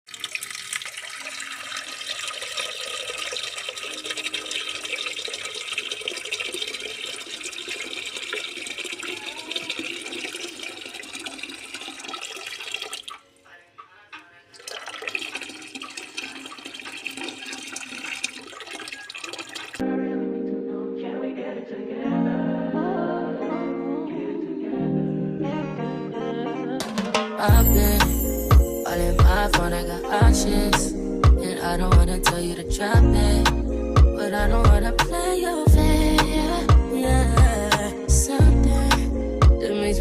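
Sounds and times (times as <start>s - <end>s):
tap water running into sink: 0.1s - 13.2s, 14.6s - 19.8s
music: 19.8s - 40.0s.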